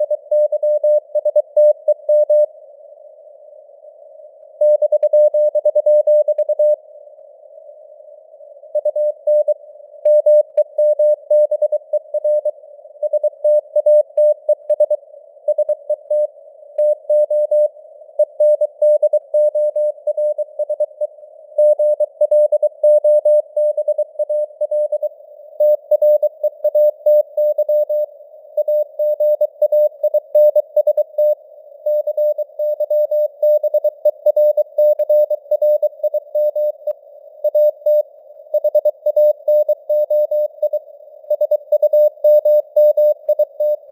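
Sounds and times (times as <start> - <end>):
morse code tone: 38.6 - 43.9.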